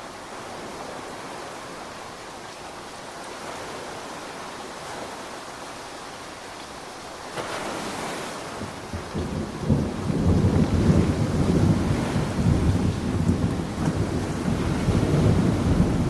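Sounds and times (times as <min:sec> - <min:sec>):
rain hiss: 0:00.0 - 0:16.0
thunder rumble: 0:08.5 - 0:16.0.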